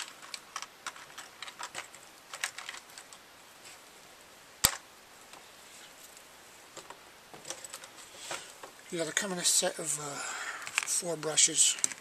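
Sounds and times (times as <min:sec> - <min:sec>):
brushes and tools clicking and rattling: 0:00.0 - 0:03.8.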